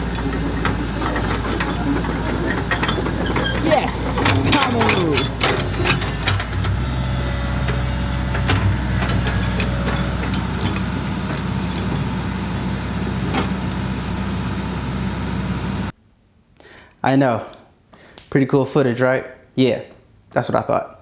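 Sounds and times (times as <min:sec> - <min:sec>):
metallic knocks and clanks: 0:00.0 - 0:15.0
heavy engine rumbling: 0:00.0 - 0:16.0.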